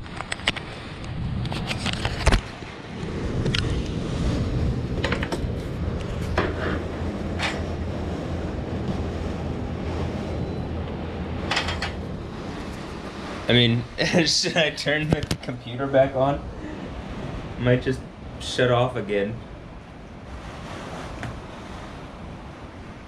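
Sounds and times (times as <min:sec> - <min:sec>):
strong wind rumbling: 0:00.0 - 0:23.0.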